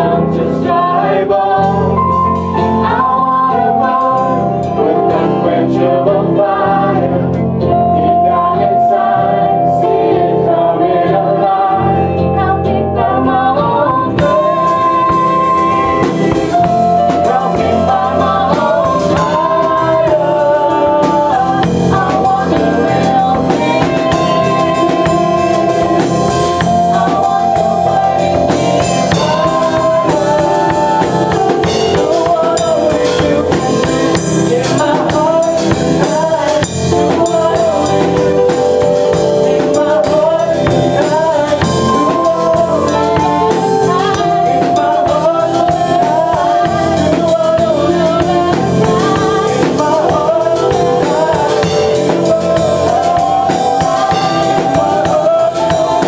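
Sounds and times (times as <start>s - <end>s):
drum kit beat: 0.0s - 56.0s
singing over a band: 0.0s - 56.0s.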